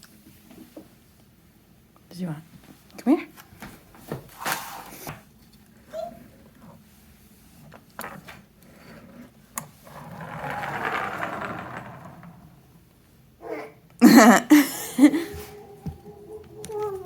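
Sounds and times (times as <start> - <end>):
child's voice: 15.3 - 17.0.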